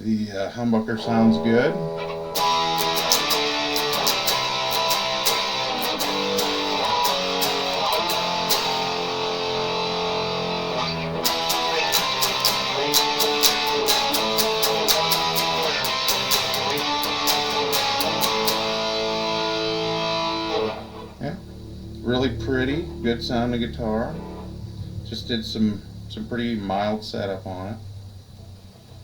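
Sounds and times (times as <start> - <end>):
electric guitar playing chords: 0.7 - 26.8.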